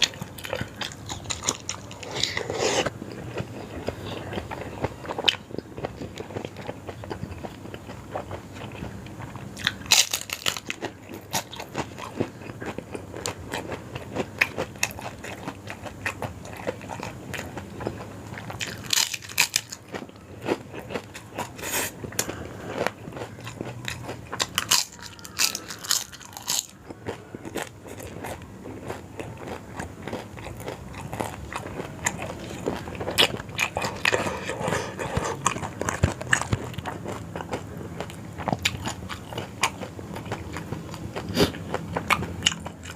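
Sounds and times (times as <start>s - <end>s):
chewing and biting: 0.0s - 42.9s
crunchy bites: 9.6s - 42.9s.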